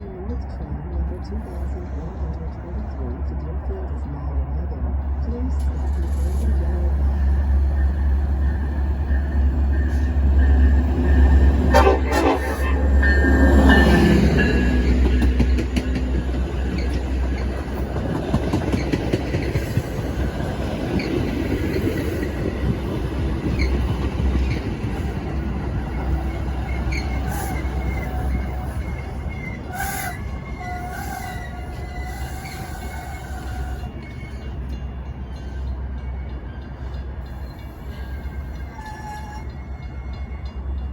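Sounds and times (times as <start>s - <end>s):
train diesel rumble: 0.0s - 40.9s
wheel and brake squeals: 25.9s - 36.2s, 37.3s - 40.3s.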